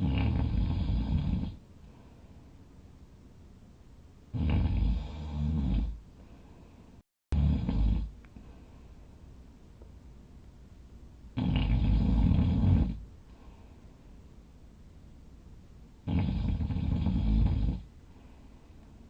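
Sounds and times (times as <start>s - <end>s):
person snoring loudly: 0.0s - 1.6s, 4.3s - 6.0s, 7.3s - 8.1s, 11.4s - 13.0s, 16.0s - 17.9s.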